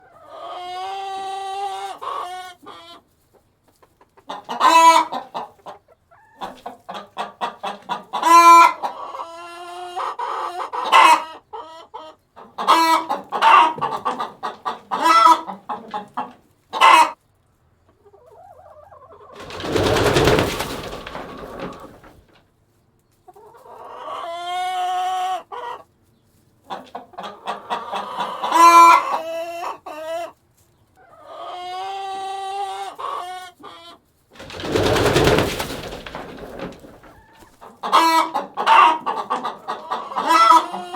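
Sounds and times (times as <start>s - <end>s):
hens clucking: 0.0s - 22.4s, 23.2s - 40.9s.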